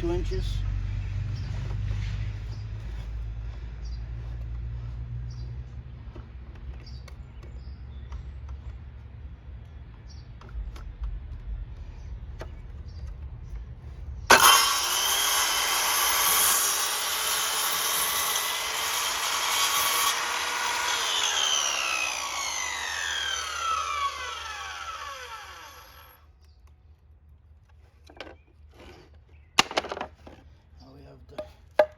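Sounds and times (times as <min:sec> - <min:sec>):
circular saw cutting wood: 0:14.3 - 0:26.2
saw motor winding down: 0:14.3 - 0:26.2.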